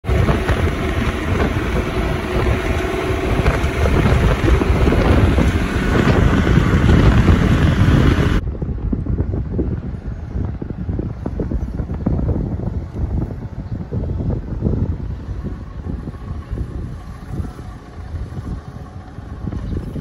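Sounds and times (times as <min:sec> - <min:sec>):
motor humming: 0:00.0 - 0:08.4, 0:11.3 - 0:20.0
wind rumbling on microphone: 0:00.0 - 0:20.0.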